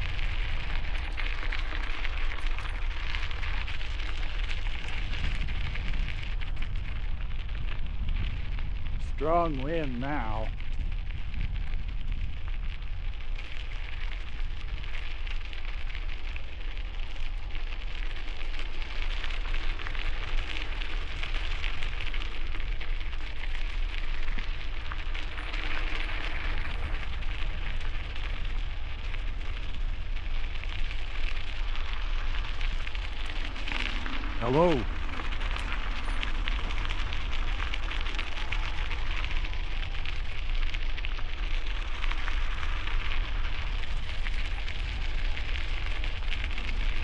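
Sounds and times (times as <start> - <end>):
wind buffeting microphone: 0.0 - 13.8.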